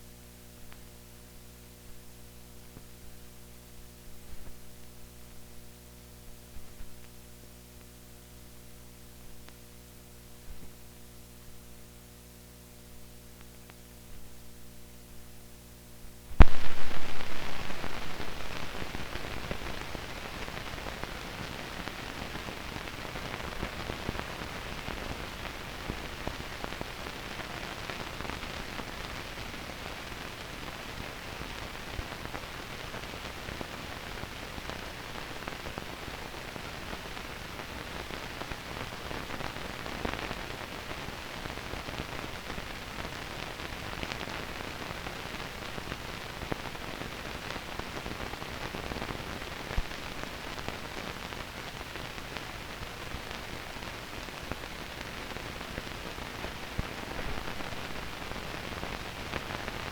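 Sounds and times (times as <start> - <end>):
low electrical hum: 0.0 - 59.9
crackling hiss: 15.2 - 59.9
loud bang: 16.4 - 18.6.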